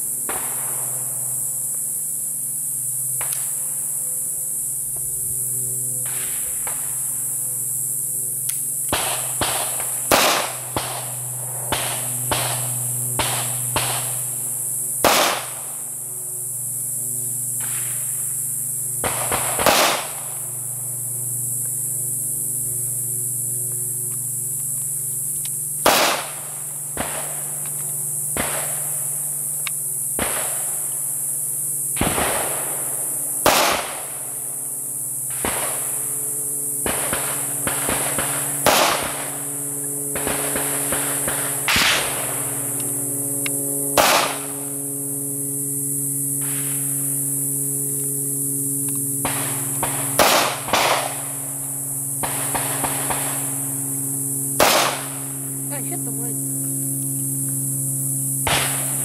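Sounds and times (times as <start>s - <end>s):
pistol shots: 8.9s - 11.1s, 15.0s - 15.6s, 19.0s - 20.2s, 25.8s - 26.4s, 33.4s - 34.0s, 36.8s - 39.2s, 44.0s - 44.4s, 49.2s - 51.2s, 54.6s - 55.1s
faint distant gunshots: 8.9s - 14.3s, 15.0s - 15.8s, 19.0s - 20.4s, 25.8s - 27.4s, 32.0s - 34.2s, 36.8s - 39.4s, 40.1s - 42.4s, 43.9s - 44.6s, 49.2s - 51.3s, 52.2s - 53.5s, 54.6s - 55.2s.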